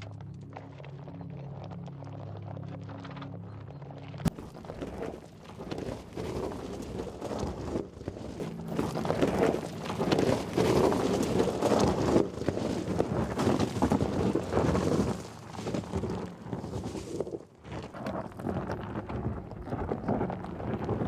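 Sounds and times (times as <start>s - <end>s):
tyres crunching over stony ground: 0.0s - 21.0s
wind buffeting microphone: 4.2s - 21.0s.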